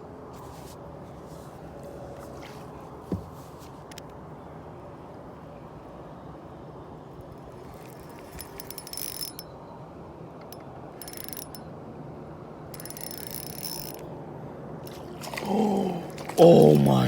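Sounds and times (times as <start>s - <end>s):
fishing reel clicking: 7.3s - 9.4s, 10.4s - 11.6s, 12.8s - 14.0s.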